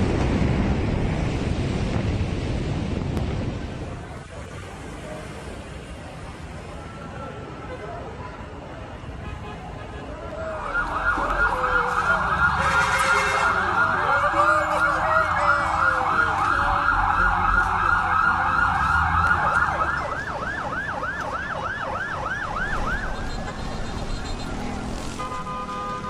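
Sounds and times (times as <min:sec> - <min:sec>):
low traffic rumble: 0:00.0 - 0:26.0
emergency sirens yelping: 0:10.2 - 0:24.8.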